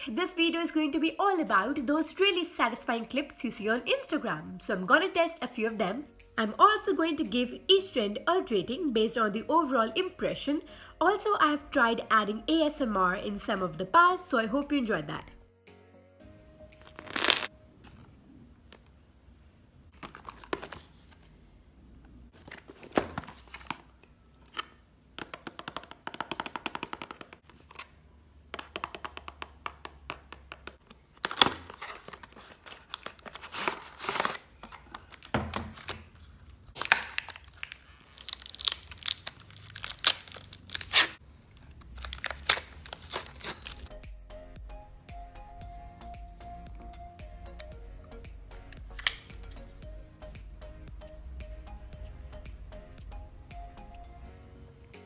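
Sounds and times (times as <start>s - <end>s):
music: 0.0s - 18.1s, 43.4s - 55.0s
crackling and crunching floral foam: 36.0s - 43.9s.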